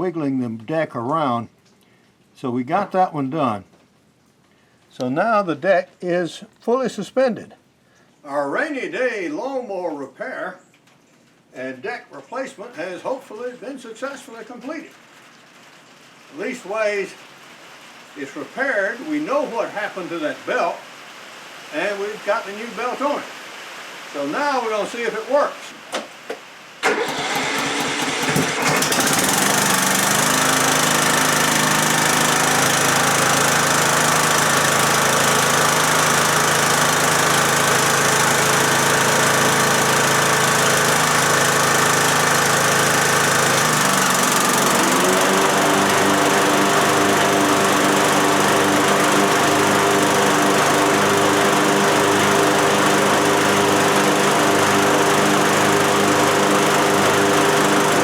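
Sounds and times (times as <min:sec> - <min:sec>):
lawnmower engine starting and running: 0:26.8 - 0:58.0.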